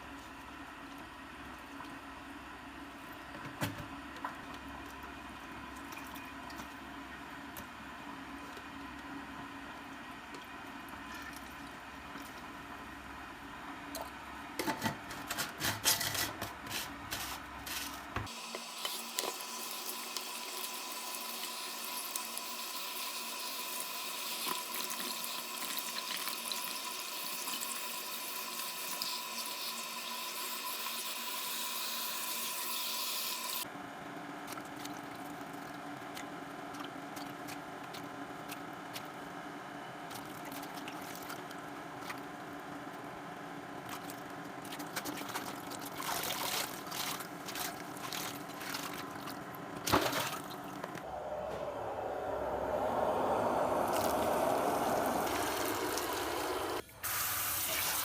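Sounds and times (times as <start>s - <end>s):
water running: 18.3s - 33.6s, 53.0s - 56.8s.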